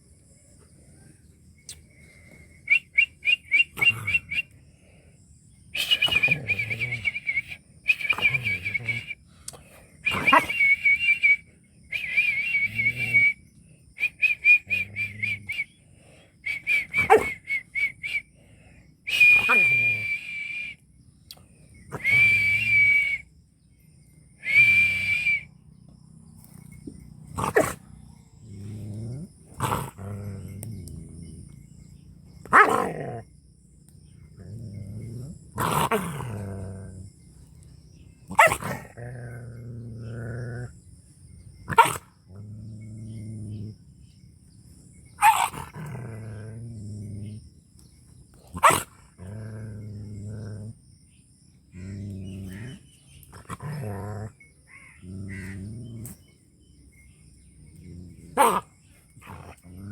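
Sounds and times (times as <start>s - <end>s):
dog growling low: 26.9s - 31.9s, 32.5s - 33.3s, 34.2s - 37.6s, 38.3s - 44.0s, 45.4s - 47.6s, 48.4s - 50.8s, 51.7s - 56.3s, 57.4s - 59.9s.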